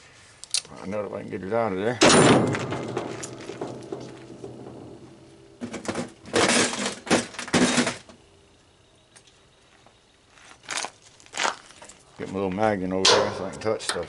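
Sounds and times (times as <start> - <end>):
metal parts clattering and scraping: 2.1 - 8.0.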